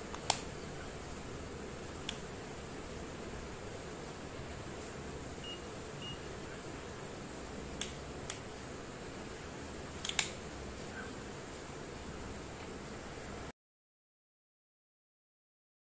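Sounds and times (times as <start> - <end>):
sharp clicks: 0.0 - 0.5, 10.0 - 10.4
steady hiss: 0.0 - 13.5
multimeter high beeps: 5.4 - 6.3.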